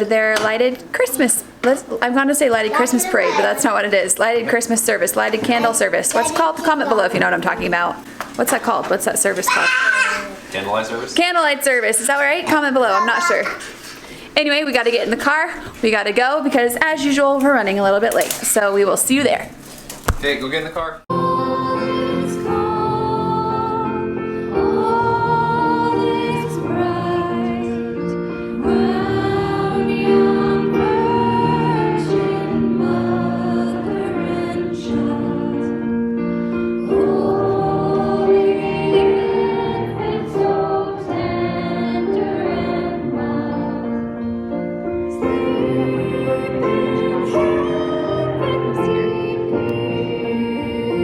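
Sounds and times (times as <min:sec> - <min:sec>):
choir singing held notes: 0:21.1 - 0:51.0.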